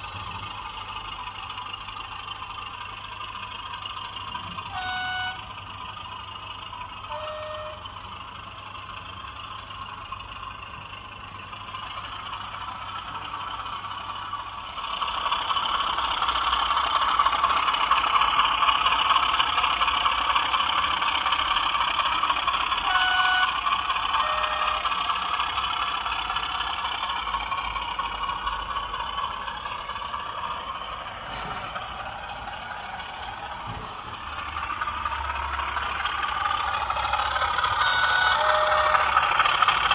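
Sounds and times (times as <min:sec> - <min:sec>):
diesel engine through small speaker: 0:00.0 - 0:39.9
short beeping tones: 0:37.8 - 0:39.0.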